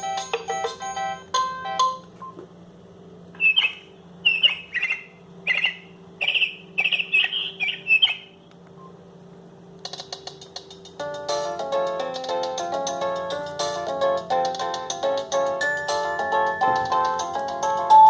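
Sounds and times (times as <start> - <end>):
birdsong ringtone chirps: 3.4 - 9.0.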